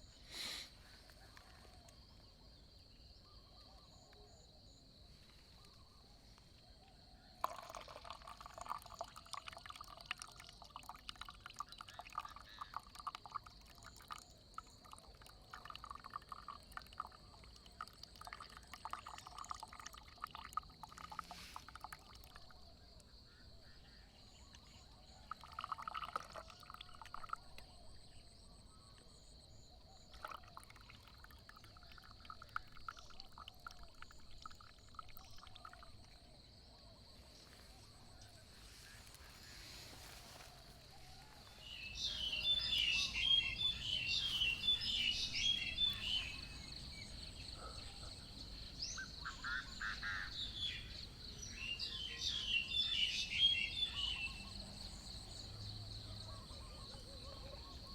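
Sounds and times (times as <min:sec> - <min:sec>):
water pouring and trickling: 0:07.2 - 0:23.0, 0:24.4 - 0:36.6.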